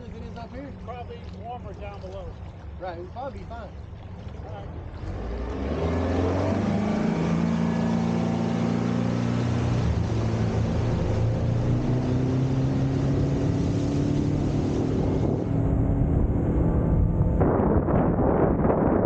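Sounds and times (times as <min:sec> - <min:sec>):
boat outboard motor running: 0:00.0 - 0:19.0.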